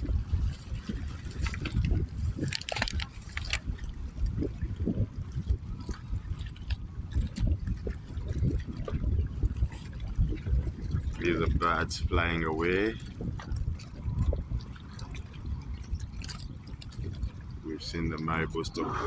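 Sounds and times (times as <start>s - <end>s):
gusty wind on microphone: 0.0s - 19.0s
water trickling and splashing: 0.0s - 19.0s.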